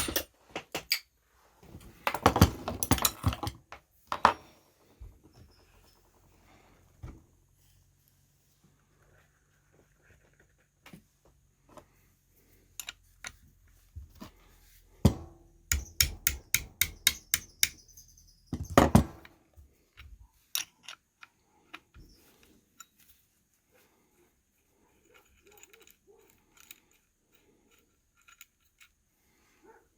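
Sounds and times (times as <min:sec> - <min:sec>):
hammer tapping metal: 0:15.1 - 0:17.8.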